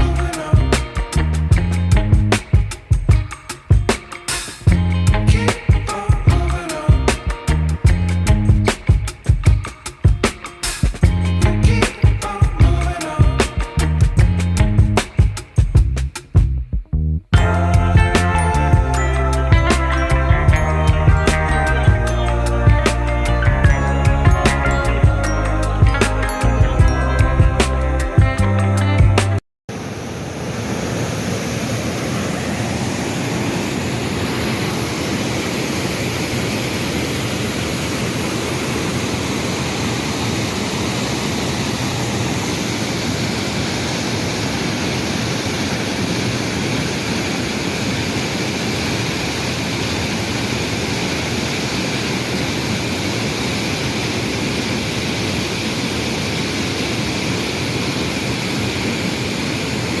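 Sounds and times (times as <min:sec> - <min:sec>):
waterfall rushing: 0:29.7 - 1:00.0.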